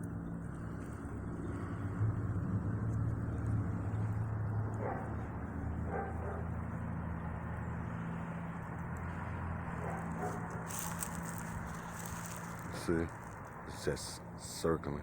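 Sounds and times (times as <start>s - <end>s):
propeller plane engine droning: 0.0s - 15.0s
dog barks: 4.8s - 5.2s, 5.8s - 6.6s, 9.8s - 10.6s.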